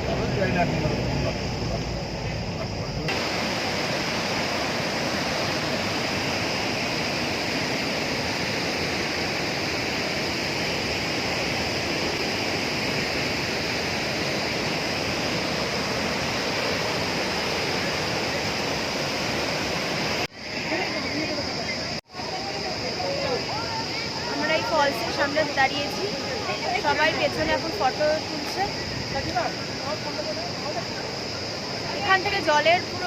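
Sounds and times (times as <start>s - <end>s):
waterfall rushing: 0.0s - 33.0s.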